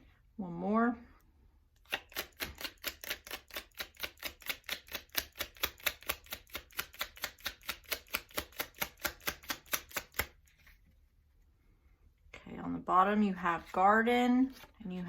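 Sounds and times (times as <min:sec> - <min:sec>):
cards being shuffled: 0:01.9 - 0:10.8, 0:14.4 - 0:15.0.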